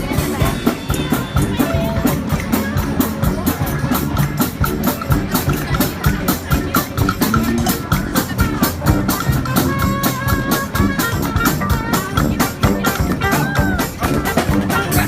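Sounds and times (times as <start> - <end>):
low bass line: 0.0 - 15.0
quick steady drumbeat: 0.0 - 15.0
horn melody: 8.4 - 15.0.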